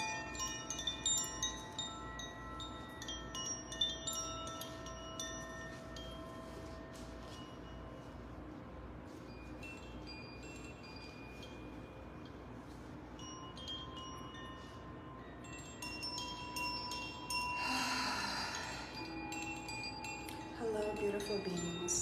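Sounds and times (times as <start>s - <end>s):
chimes tinkling: 0.0s - 22.0s.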